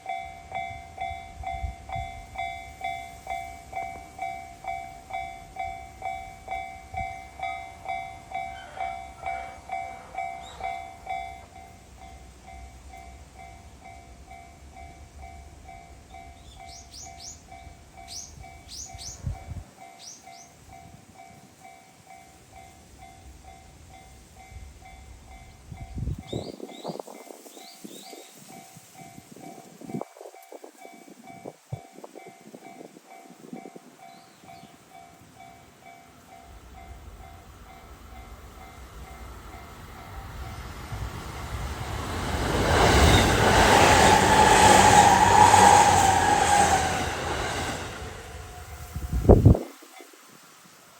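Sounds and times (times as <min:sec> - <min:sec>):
steady train whine: 0:00.0 - 0:50.9
bird chirping: 0:16.4 - 0:17.5, 0:18.1 - 0:19.3, 0:20.0 - 0:20.6
train wheels rumbling: 0:31.2 - 0:49.6.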